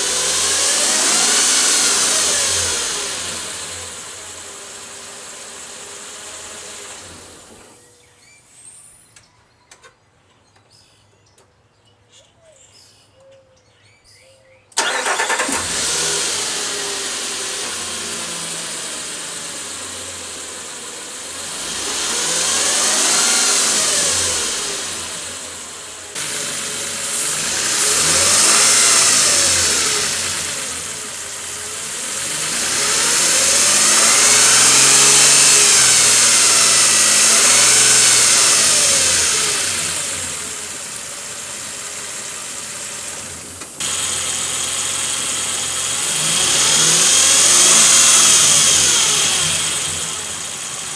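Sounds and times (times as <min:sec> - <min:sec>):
engine revving with whine: 0:00.0 - 0:07.8, 0:14.8 - 0:50.9.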